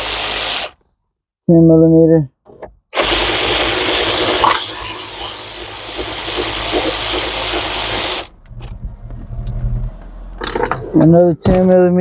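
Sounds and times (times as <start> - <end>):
handheld power tool running: 0.0 - 0.8, 3.0 - 8.3.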